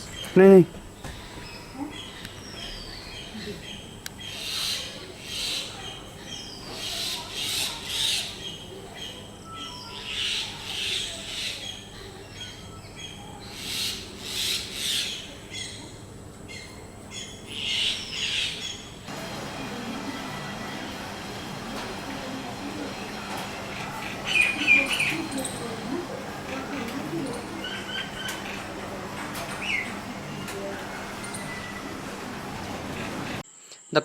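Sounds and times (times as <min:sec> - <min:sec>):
myna harsh rasping calls: 0:16.6 - 0:33.4.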